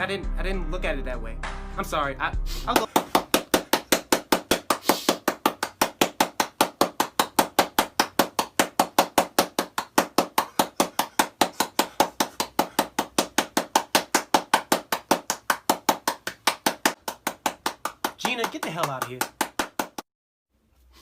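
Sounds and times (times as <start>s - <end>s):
rapid sharp knocks: 2.8s - 20.0s.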